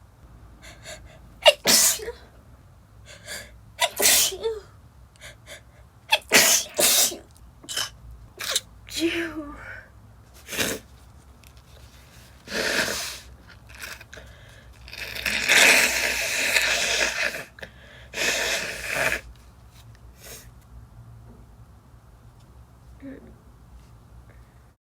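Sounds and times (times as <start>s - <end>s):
woman stifling sneezes: 1.4s - 2.2s, 3.8s - 4.6s, 6.1s - 8.6s.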